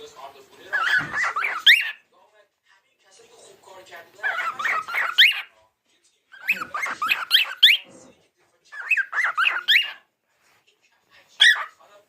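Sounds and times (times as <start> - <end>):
cockatiel chattering and whistling: 0.7 - 2.0, 4.2 - 5.5, 6.4 - 7.9, 8.7 - 10.1, 11.4 - 11.8.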